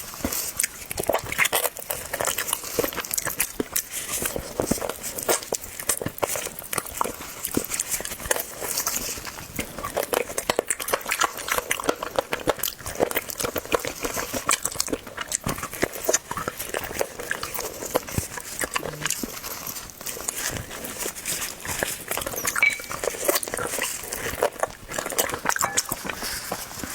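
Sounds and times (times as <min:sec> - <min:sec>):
chewing and lip-smacking: 0:00.0 - 0:26.9.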